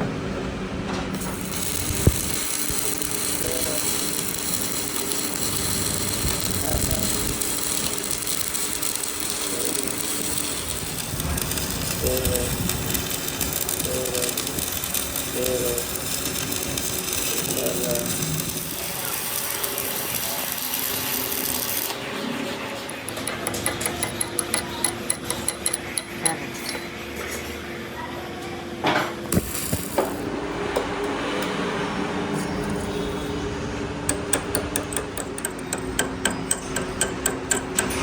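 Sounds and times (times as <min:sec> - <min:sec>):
metalworking lathe running: 0:01.2 - 0:26.9.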